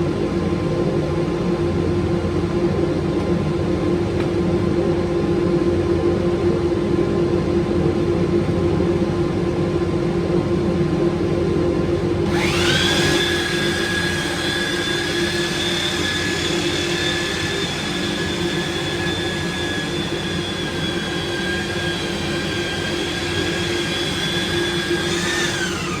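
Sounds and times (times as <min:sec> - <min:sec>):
high-pitched motor whine: 0:12.2 - 0:26.0
power tool motor running: 0:12.2 - 0:26.0.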